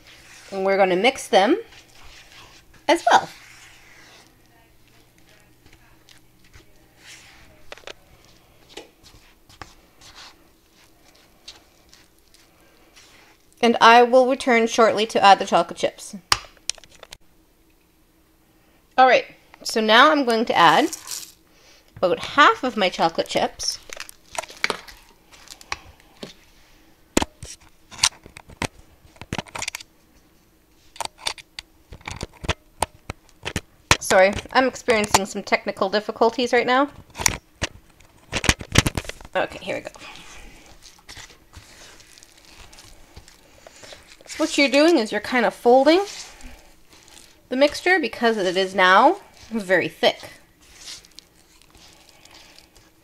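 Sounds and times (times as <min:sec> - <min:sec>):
spoon scraping batter in bowl: 0:00.0 - 0:00.7, 0:01.6 - 0:05.8, 0:40.2 - 0:53.0.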